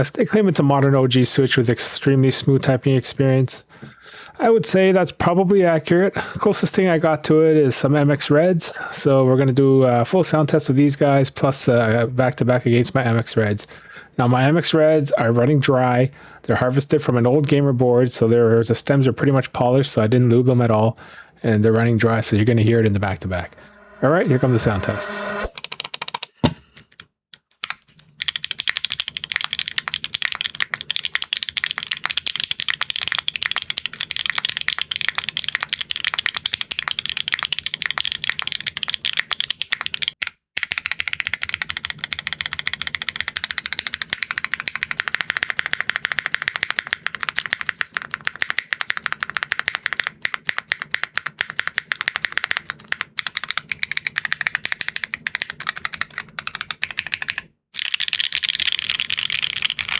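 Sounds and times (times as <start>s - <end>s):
mechanical keyboard typing: 25.0s - 26.6s, 27.6s - 59.9s.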